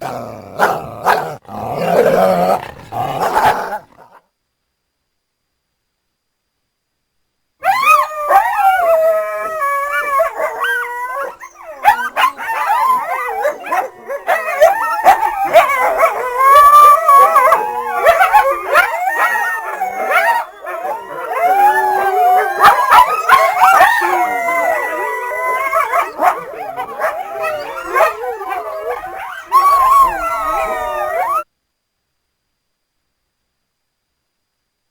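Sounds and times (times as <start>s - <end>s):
coyotes howling and yipping: 7.6s - 31.5s.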